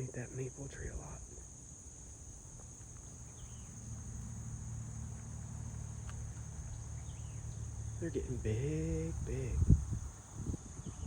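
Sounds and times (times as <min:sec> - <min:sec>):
high-pitched insect chorus: 0:00.0 - 0:11.0
low steady hum: 0:00.0 - 0:11.0.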